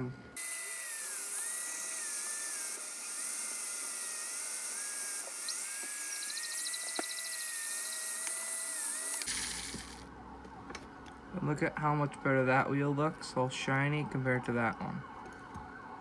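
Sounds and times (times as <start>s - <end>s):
toy train motor whining: 0.4s - 10.1s.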